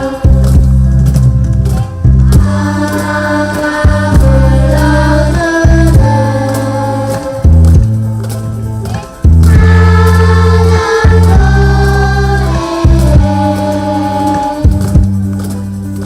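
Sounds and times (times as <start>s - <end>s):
steady bass line: 0.0s - 16.0s
group singing together: 2.3s - 7.6s, 9.4s - 15.0s.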